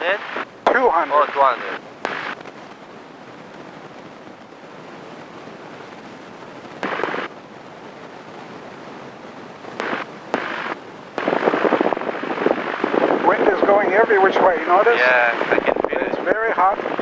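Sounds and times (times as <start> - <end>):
intercom bursts: 0.0 - 2.4, 6.8 - 7.3, 9.8 - 17.0.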